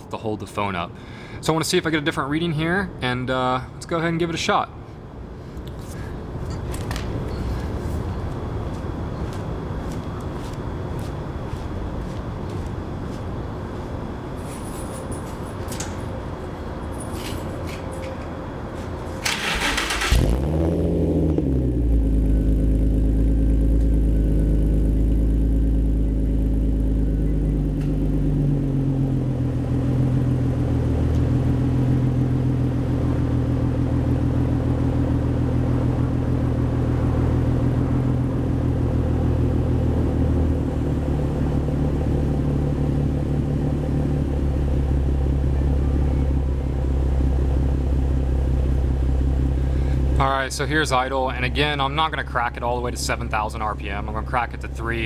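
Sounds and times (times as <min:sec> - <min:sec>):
car engine revving and idling: 0:19.3 - 0:55.0.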